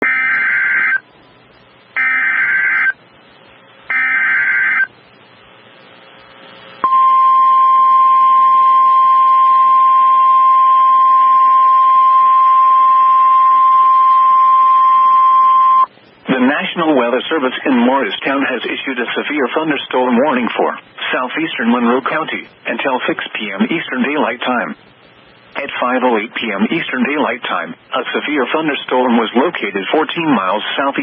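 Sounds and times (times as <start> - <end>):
warbling modem-like data bursts: 0.0 - 31.0
steady single-pitch alert tone: 2.0 - 3.0, 3.9 - 5.0, 6.8 - 15.9.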